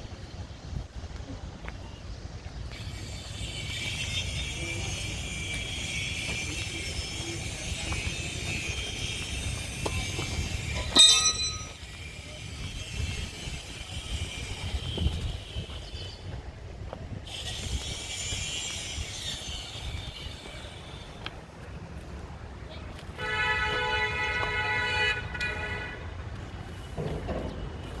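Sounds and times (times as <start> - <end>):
ringing metallic clank: 10.7 - 12.0.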